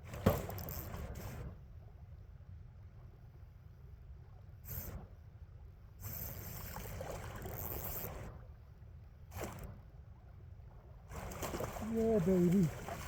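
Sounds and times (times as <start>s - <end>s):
low river rumble: 10.1s - 13.0s
fish splashing in water: 11.2s - 13.0s.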